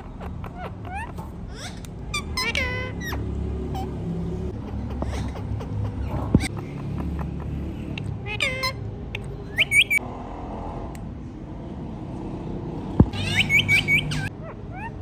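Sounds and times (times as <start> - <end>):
parrot high chirps: 0.0 - 6.5, 8.2 - 8.8, 9.5 - 10.0, 13.1 - 15.0
parrot calling: 0.0 - 10.0, 13.0 - 15.0.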